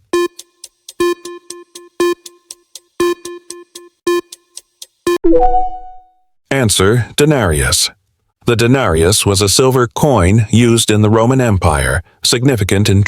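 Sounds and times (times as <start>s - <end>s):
clock-like timer ticks: 0.0s - 5.2s
three-tone chime: 5.3s - 6.1s.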